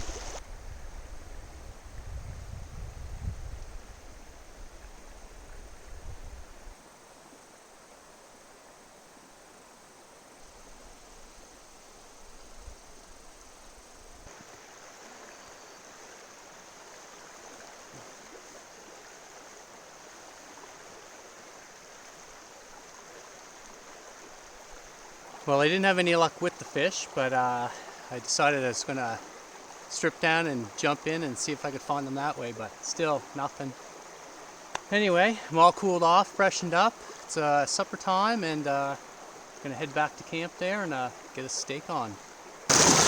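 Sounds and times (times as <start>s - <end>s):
river water flowing: 0.0s - 0.6s, 3.6s - 43.0s
wind rumble on microphone: 0.0s - 6.8s.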